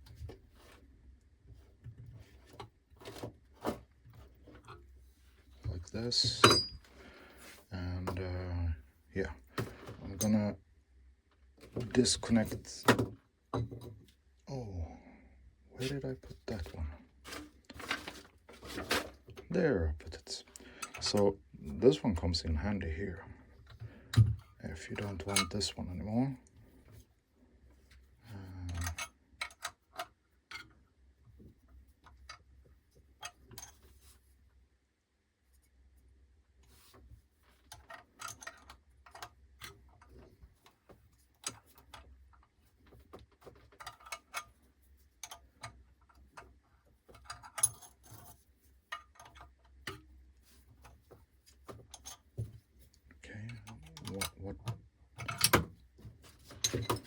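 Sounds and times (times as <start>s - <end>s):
hand tools clicking and knocking: 6.3s - 6.8s.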